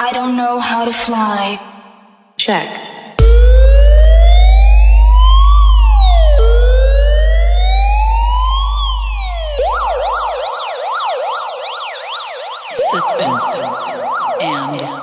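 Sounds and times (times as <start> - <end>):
deep low hum: 3.2 - 10.4
electronic police siren ringtone: 3.2 - 15.0.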